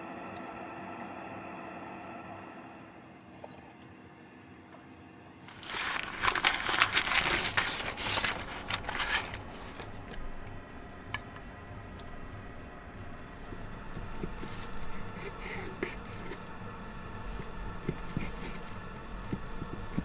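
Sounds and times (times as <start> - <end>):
crinkling and rustling: 5.4 - 20.0.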